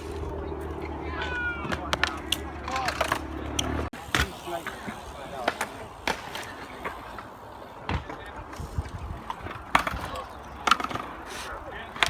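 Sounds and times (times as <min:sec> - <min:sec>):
bike tyre rolling: 0:00.0 - 0:12.0.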